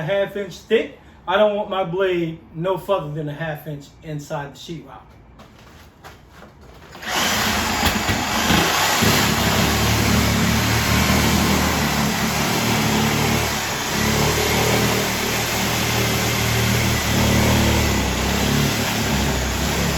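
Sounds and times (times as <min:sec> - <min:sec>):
reciprocating saw cutting drywall: 0:07.0 - 0:19.9.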